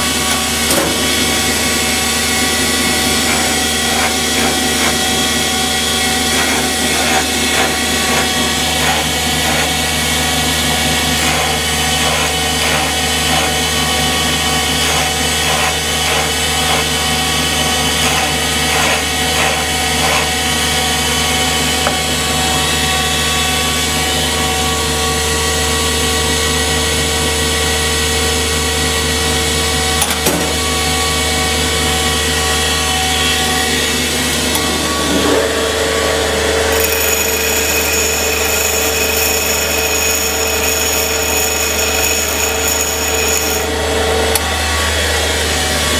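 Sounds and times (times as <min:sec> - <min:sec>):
stone grinding a valve: 0:00.0 - 0:22.0, 0:36.6 - 0:44.5
machine motor humming: 0:31.9 - 0:45.9.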